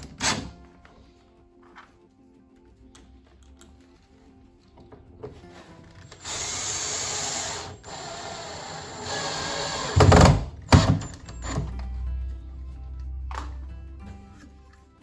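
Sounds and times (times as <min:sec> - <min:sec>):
power drill running: 0:06.1 - 0:11.6.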